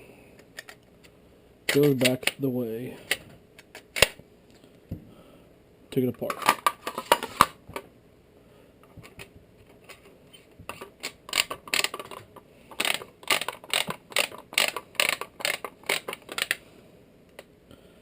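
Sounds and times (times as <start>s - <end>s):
metal parts clicking and scraping: 9.9s - 16.6s.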